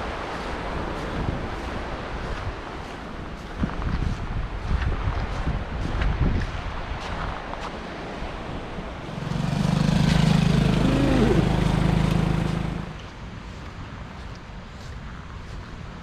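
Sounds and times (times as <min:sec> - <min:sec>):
wind noise on microphone: 0:00.0 - 0:16.0
vehicle engine passing by: 0:08.9 - 0:13.2.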